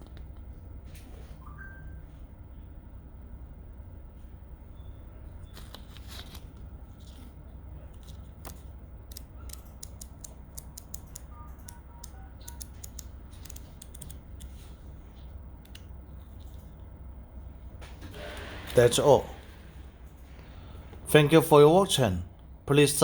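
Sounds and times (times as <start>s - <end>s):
low steady hum: 0.0s - 23.0s
paper rustling and clicking: 5.4s - 11.8s.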